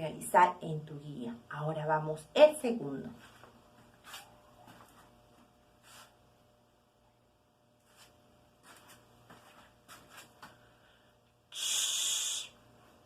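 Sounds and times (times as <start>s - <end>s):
person shushing: 11.5s - 12.6s.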